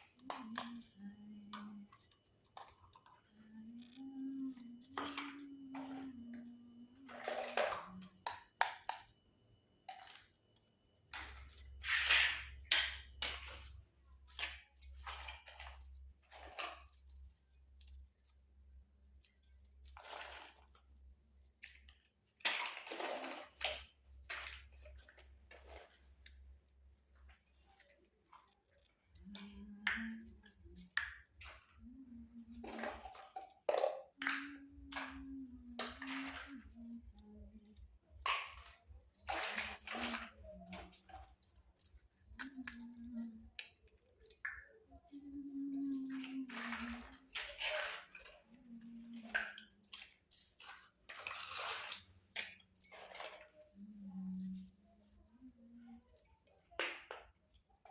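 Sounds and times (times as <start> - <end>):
toy kitchen pieces clattering: 0.0 - 9.2, 9.8 - 18.5, 19.3 - 57.9.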